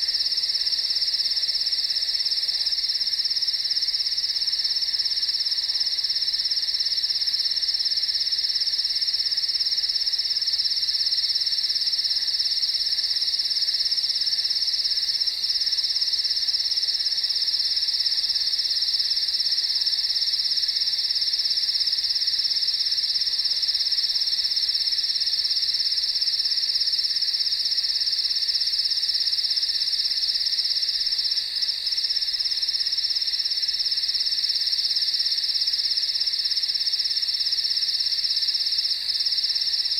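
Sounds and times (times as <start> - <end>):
crickets chirping: 0.0 - 39.9.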